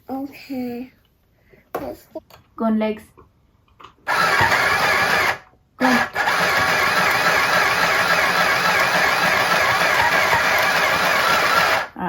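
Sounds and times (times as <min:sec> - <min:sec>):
sewing machine motor stitching: 0:04.1 - 0:12.0.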